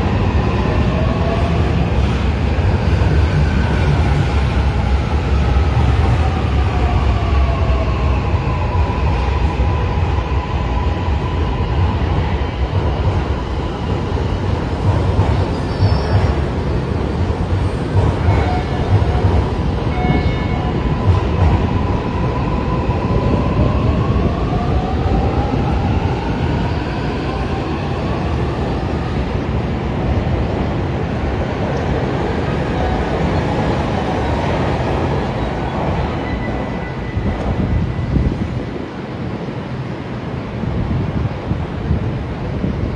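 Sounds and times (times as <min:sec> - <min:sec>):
train running gear rumble: 0:11.4 - 0:42.9.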